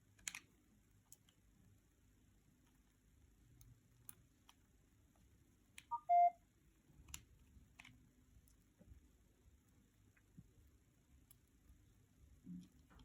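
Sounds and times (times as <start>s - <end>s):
short electronic beeps: 5.9s - 6.4s.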